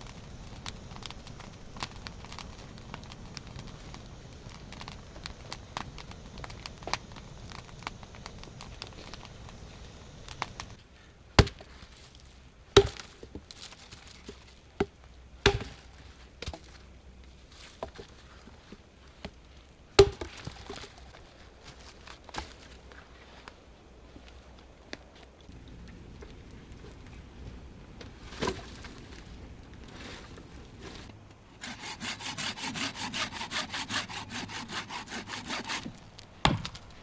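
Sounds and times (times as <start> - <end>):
faint crackling: 0.0 - 10.8
axe chopping wood: 11.4 - 11.7, 12.8 - 13.3, 14.8 - 16.7, 20.0 - 20.8, 31.7 - 36.9.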